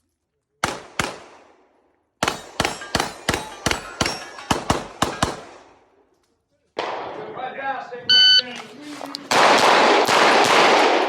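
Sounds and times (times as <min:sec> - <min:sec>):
rapid gunshots with echo: 0:00.6 - 0:01.6, 0:02.2 - 0:05.8, 0:09.3 - 0:11.0.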